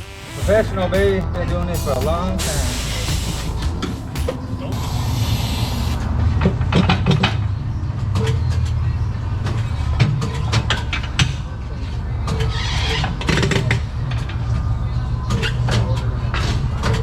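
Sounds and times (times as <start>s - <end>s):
compressed air hiss: 1.8s - 6.1s.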